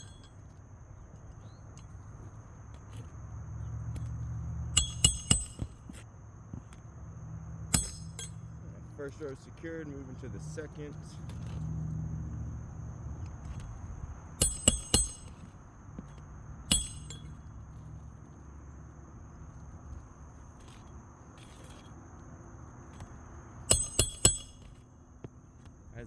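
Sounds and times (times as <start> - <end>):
hatchet striking roofing nails: 4.7 - 6.8, 7.7 - 8.4, 13.2 - 17.8, 22.8 - 25.8.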